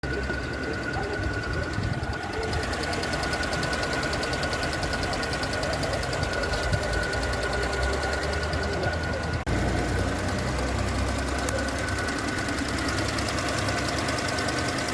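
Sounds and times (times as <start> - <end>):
car engine idling: 0.0 - 14.9
purge valve ticking rapidly: 0.0 - 14.9.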